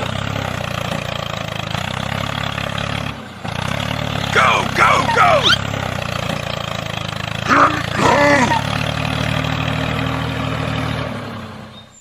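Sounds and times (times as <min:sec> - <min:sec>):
small tractor engine running: 0:00.0 - 0:12.0
short voice-like calls: 0:04.4 - 0:05.7, 0:07.5 - 0:08.7.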